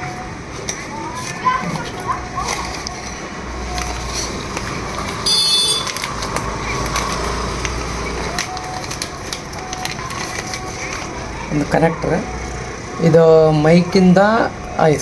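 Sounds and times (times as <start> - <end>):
high-pitched tone: 7.6 - 14.8.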